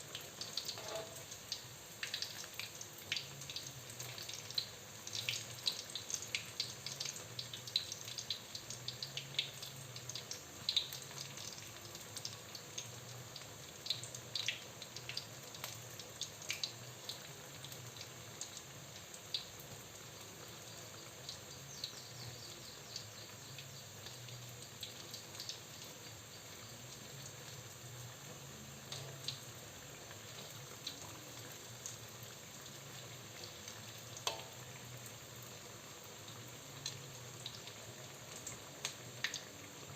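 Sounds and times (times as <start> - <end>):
food frying in hot oil: 0.0 - 39.9
crackling pops of oil: 34.2 - 34.6.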